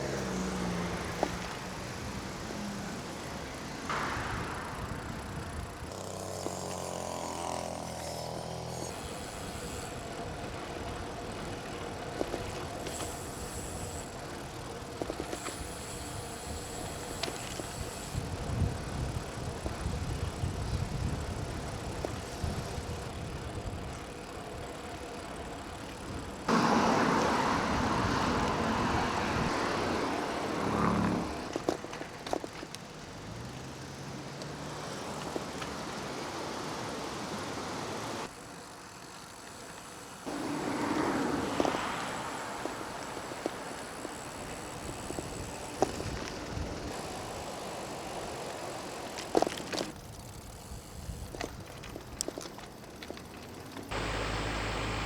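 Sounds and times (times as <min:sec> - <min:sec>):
vehicle engine passing: 0:00.0 - 0:08.9, 0:26.5 - 0:31.6, 0:53.9 - 0:55.0
wind and tyre noise: 0:00.0 - 0:55.0.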